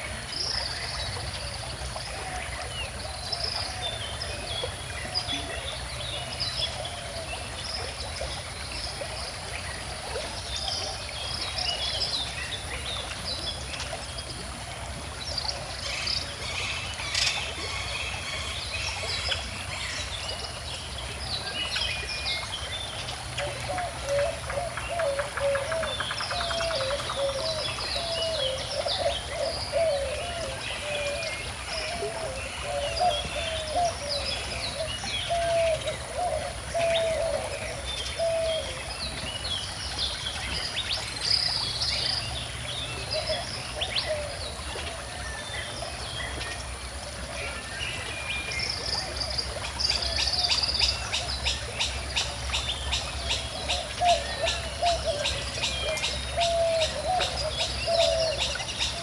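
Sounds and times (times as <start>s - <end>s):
stream flowing: 0.0s - 59.0s
songbirds singing and chirping: 15.0s - 59.0s.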